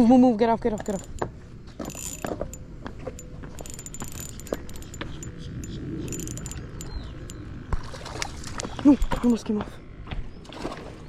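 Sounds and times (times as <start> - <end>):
fishing reel clicking: 0.7 - 7.4.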